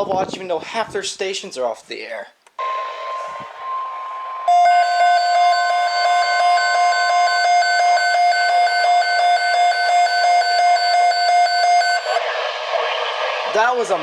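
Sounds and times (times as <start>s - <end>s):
pulsing radio alarm beep: 2.6s - 12.6s
steady warning tone: 2.6s - 14.0s.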